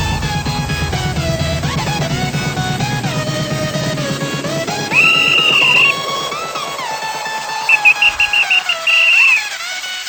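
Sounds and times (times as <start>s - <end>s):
sliding melodic lead over fast beat: 0.0s - 9.6s.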